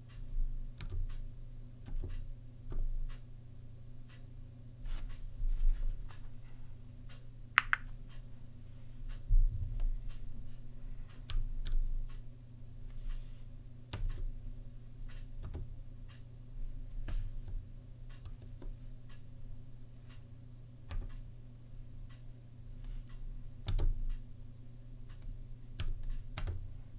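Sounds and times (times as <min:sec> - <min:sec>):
keyboard typing clicks: 0:00.8 - 0:01.2, 0:07.6 - 0:08.0, 0:13.9 - 0:14.3, 0:15.1 - 0:16.2, 0:17.1 - 0:18.8, 0:20.9 - 0:21.3, 0:23.6 - 0:24.2, 0:25.1 - 0:26.6.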